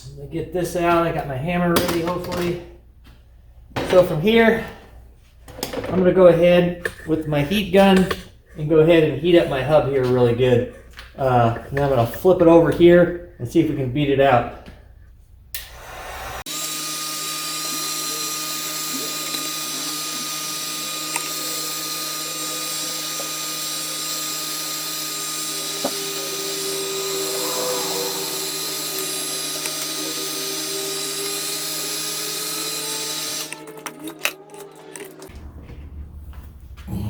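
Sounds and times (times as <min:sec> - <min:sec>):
heat gun blowing: 0:15.6 - 0:35.2.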